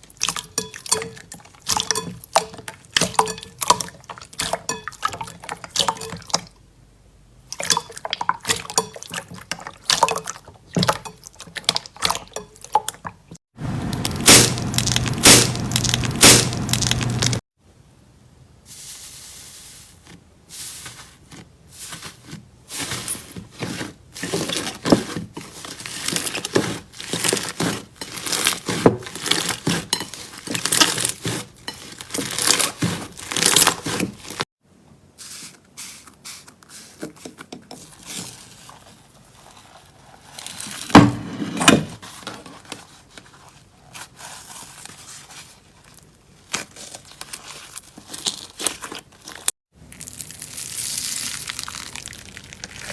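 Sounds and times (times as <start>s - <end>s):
slime crackling and squelching: 13.9s - 17.4s, 20.8s - 34.5s, 42.9s - 52.9s.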